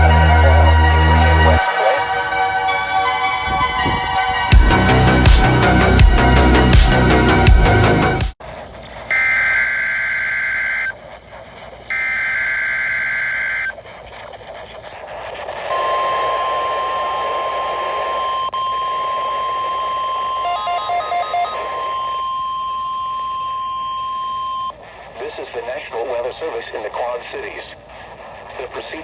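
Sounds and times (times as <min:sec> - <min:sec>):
steady alarm tone: 0:00.0 - 0:08.3, 0:09.1 - 0:11.0, 0:11.9 - 0:13.8, 0:15.7 - 0:25.7
radio hiss: 0:00.4 - 0:04.0, 0:08.4 - 0:29.0
beeping: 0:09.1 - 0:11.0, 0:11.9 - 0:13.8, 0:15.6 - 0:27.8
warbling two-tone data bursts: 0:11.9 - 0:13.8, 0:15.0 - 0:27.8.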